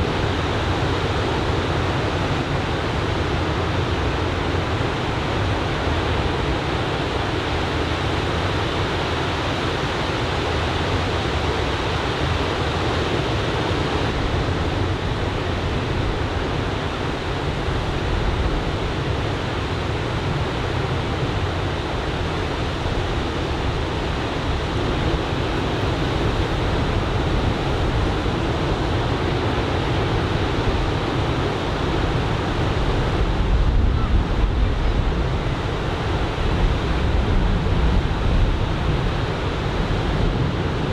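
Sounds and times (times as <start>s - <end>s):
waves breaking on beach: 0.1s - 40.9s
wind buffeting microphone: 11.0s - 40.9s.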